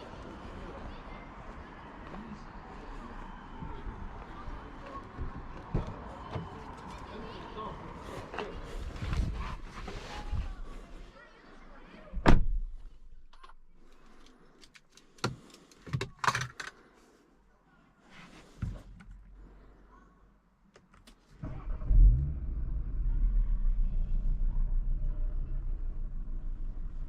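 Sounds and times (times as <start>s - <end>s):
clicks and handling noises: 13.3s - 17.1s
car engine starting and idling: 21.3s - 27.0s.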